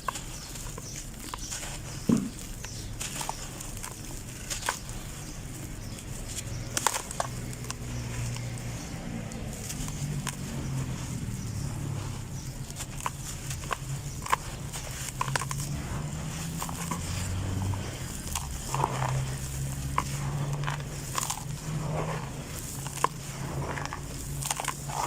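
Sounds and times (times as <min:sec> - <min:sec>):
dirt clumps crunching: 0:00.0 - 0:25.0.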